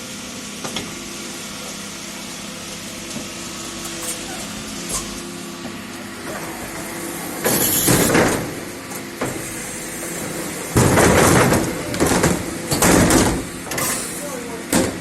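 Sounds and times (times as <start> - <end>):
garbage truck running: 0.0 - 15.0
waste collection clattering crashes: 3.9 - 15.0.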